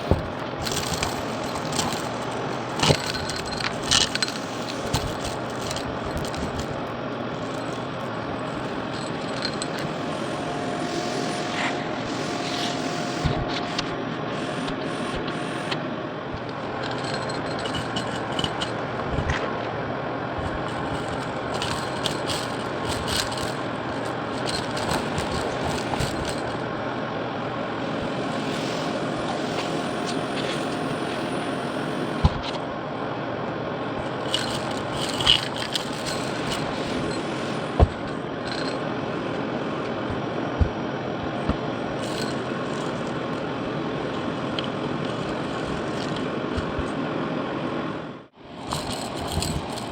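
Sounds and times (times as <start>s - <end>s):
debris clicking: 0.0s - 10.0s, 16.4s - 19.4s, 20.4s - 26.7s, 34.0s - 38.9s
vacuum cleaner running: 0.0s - 49.9s.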